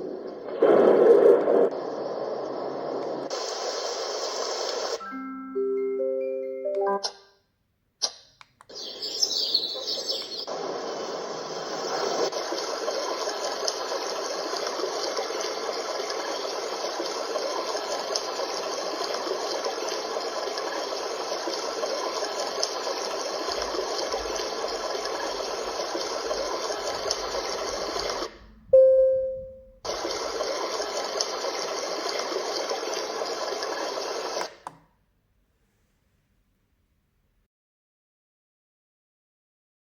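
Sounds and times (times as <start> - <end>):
white noise from small speaker: 0.0 - 5.1, 8.6 - 37.4
short beep: 28.7 - 29.8.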